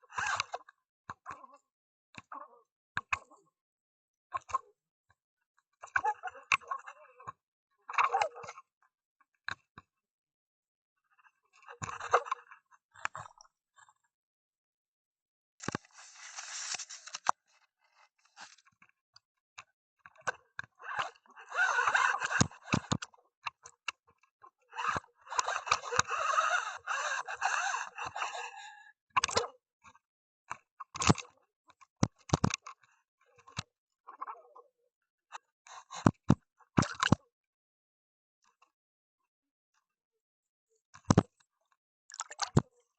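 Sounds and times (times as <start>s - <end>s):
underwater crackling and scraping: 15.6s - 18.9s, 21.0s - 23.2s, 24.8s - 28.7s.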